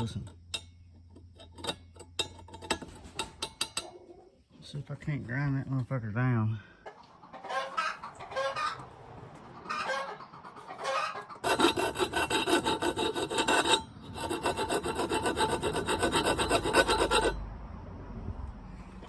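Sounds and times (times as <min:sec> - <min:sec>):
metal grinding: 0:00.0 - 0:04.0, 0:11.4 - 0:17.4
hens clucking: 0:03.8 - 0:04.5, 0:06.6 - 0:17.3.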